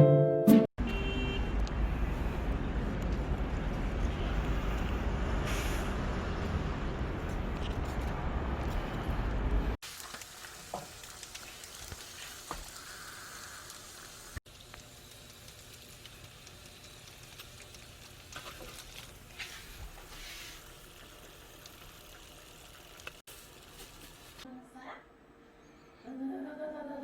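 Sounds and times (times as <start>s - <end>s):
food sizzling in a frying pan: 9.8s - 24.5s.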